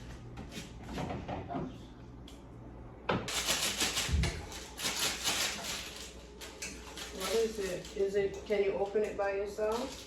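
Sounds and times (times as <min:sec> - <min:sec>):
plastic packaging crinkling: 0:03.3 - 0:08.5, 0:09.6 - 0:10.0.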